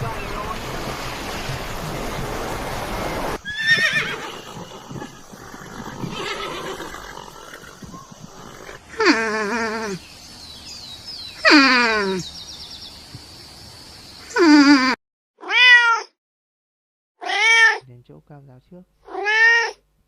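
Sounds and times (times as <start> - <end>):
horse whinnying: 3.4 - 10.0.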